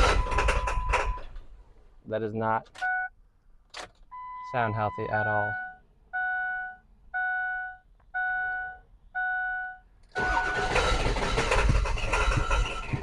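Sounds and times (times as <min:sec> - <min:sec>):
electronic beeps: 0:04.2 - 0:10.6
diesel engine running rough: 0:10.2 - 0:13.0.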